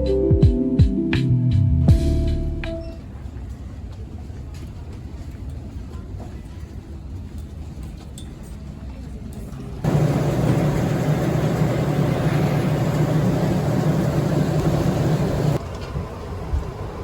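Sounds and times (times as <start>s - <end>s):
aircraft machinery rushing hum: 9.8s - 17.0s.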